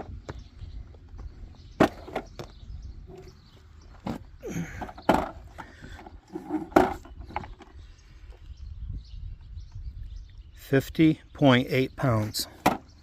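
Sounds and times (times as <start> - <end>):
heavy tire knocking and thumping: 3.9 - 7.5.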